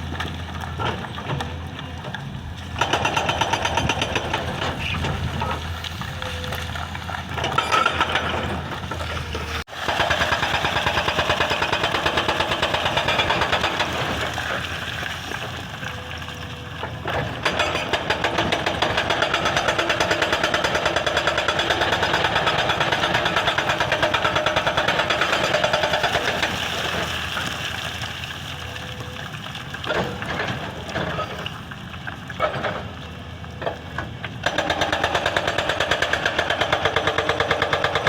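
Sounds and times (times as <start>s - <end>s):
excavator engine running: 0.0s - 38.0s
hydraulic breaker hammering rock: 2.8s - 5.6s, 7.4s - 14.6s, 17.0s - 27.0s, 34.4s - 38.0s.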